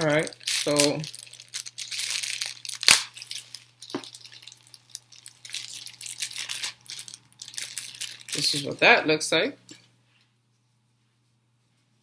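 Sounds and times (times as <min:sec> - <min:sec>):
packaging crinkling and rustling: 0:00.0 - 0:08.9.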